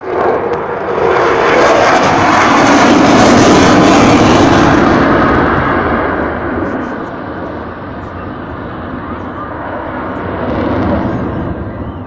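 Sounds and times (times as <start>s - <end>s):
jet engine roar passing overhead: 0.0s - 12.0s.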